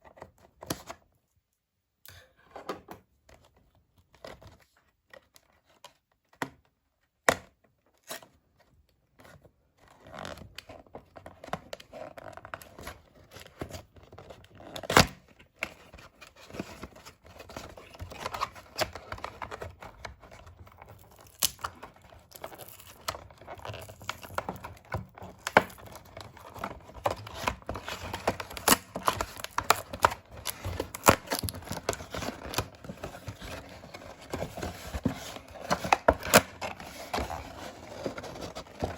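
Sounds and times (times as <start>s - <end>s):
packaging tearing and crinkling: 17.7s - 38.9s.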